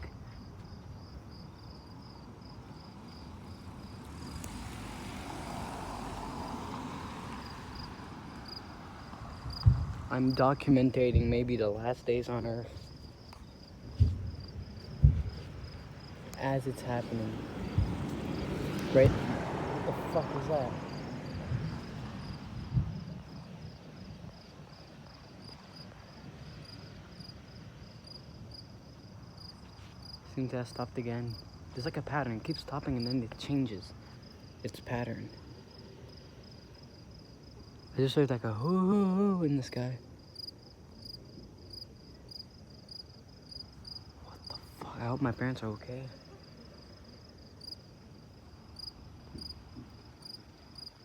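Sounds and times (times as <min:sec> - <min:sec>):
crickets chirping: 0:00.0 - 0:51.0
distant thunder rumble: 0:07.5 - 0:10.3, 0:13.8 - 0:24.9
single thump: 0:09.6 - 0:10.0, 0:13.9 - 0:15.7.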